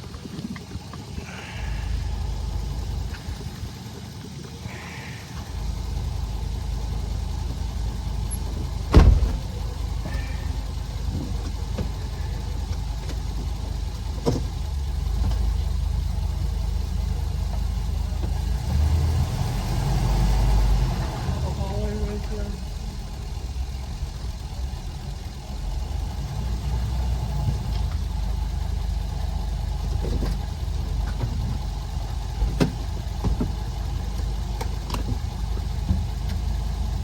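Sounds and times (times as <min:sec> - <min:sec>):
engine rumbling: 0:00.0 - 0:37.0
loud thump: 0:08.9 - 0:09.5.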